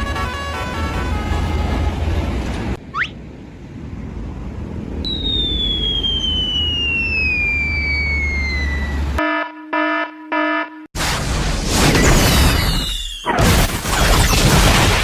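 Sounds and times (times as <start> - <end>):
falling whistle: 5.0 - 9.2, 12.5 - 13.3.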